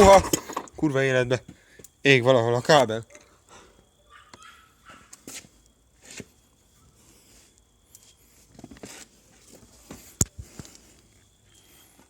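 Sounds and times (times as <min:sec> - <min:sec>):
scattered clicks and knocks: 0:00.0 - 0:00.9.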